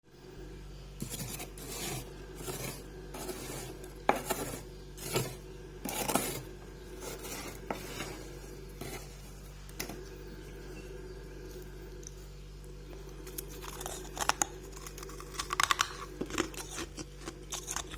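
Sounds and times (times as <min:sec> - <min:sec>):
low steady hum: 0:00.0 - 0:17.9
freezer frost being scraped: 0:01.0 - 0:10.0, 0:13.3 - 0:17.9.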